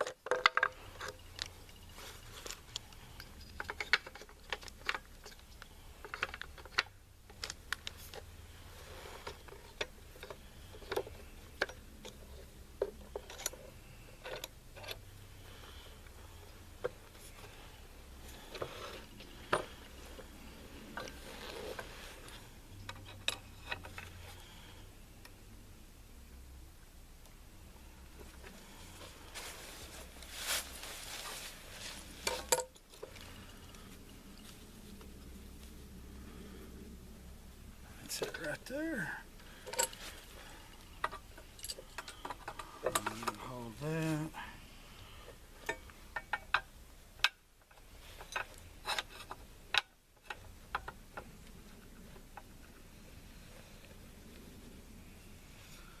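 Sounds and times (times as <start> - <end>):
metal parts clicking and tapping: 0.0 - 8.3, 9.2 - 15.0, 22.8 - 24.4, 32.2 - 33.3, 41.0 - 43.8, 45.6 - 51.3
low steady hum: 0.0 - 56.0.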